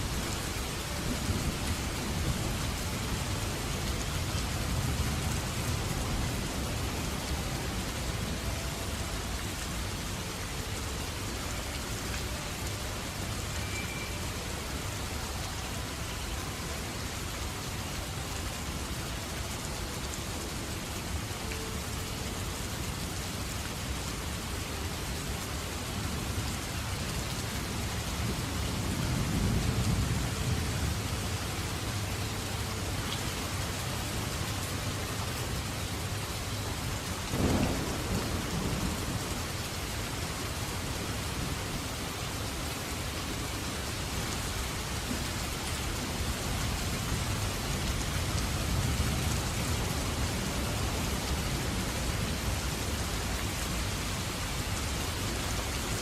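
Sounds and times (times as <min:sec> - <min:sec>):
heavy rain falling: 0:00.0 - 0:56.0
low roll of thunder: 0:37.3 - 0:39.6.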